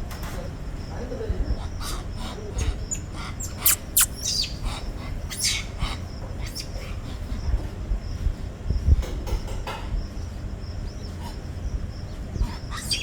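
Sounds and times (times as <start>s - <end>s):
high-pitched animal squeaks: 2.9s - 6.7s, 12.7s - 13.0s.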